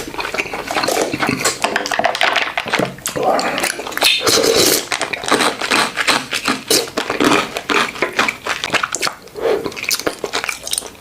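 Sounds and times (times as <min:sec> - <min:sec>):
chewing and sipping: 0:00.0 - 0:11.0
wet mouth clicks: 0:03.0 - 0:11.0.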